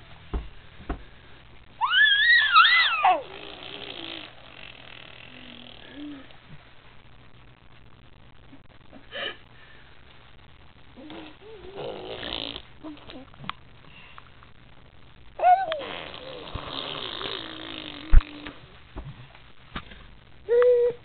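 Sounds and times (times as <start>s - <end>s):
baby squealing: 1.8s - 3.3s, 15.4s - 16.4s
baby making raspy noises: 2.2s - 6.3s, 15.4s - 18.5s.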